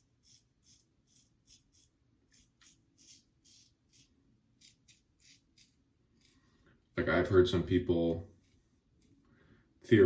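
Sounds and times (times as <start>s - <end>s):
razor scraping stubble: 0.0s - 6.6s, 7.9s - 9.2s.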